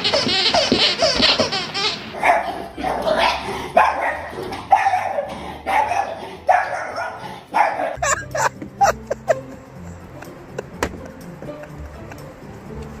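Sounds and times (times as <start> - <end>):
dog barking: 2.2 - 8.0.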